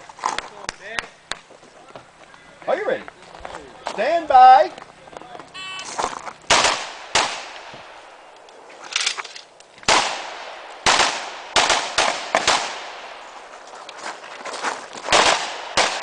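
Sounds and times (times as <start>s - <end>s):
rifle shots echoing: 6.5s - 8.2s, 9.9s - 13.4s, 15.1s - 16.0s.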